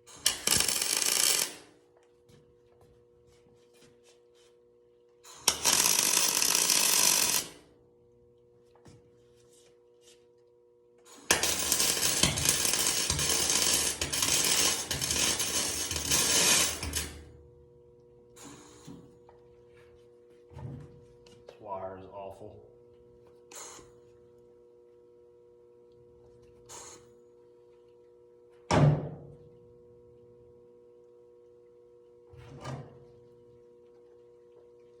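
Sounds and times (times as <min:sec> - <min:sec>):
welding arc crackling hiss: 0:00.1 - 0:01.7, 0:05.3 - 0:07.6.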